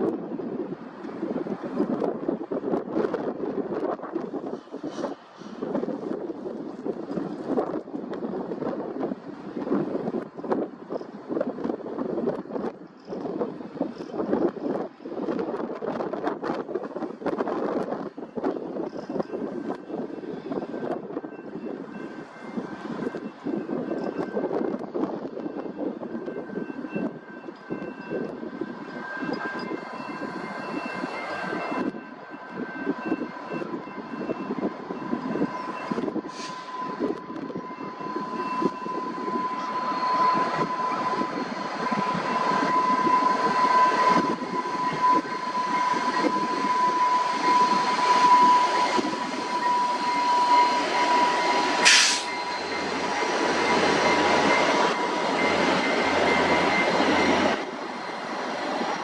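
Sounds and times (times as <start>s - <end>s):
train wheels rolling on rails: 0.0s - 59.0s
thin high whine: 35.2s - 59.0s.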